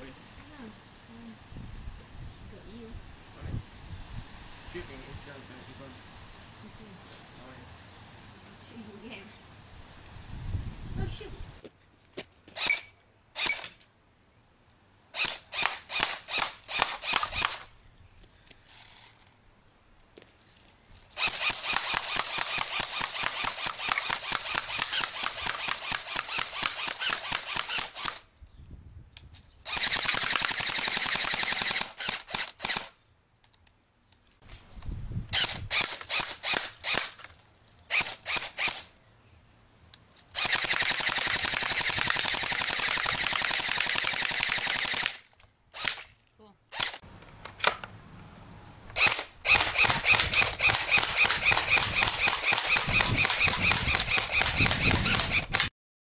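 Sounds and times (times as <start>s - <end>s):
airsoft rifle firing bursts: 15.2s - 17.6s, 21.2s - 28.2s, 29.7s - 32.9s, 40.4s - 45.2s, 49.0s - 55.7s.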